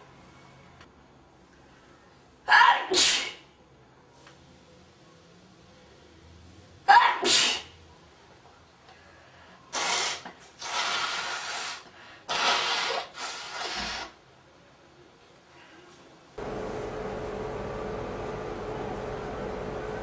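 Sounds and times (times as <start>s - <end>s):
man blowing nose: 9.7s - 14.2s.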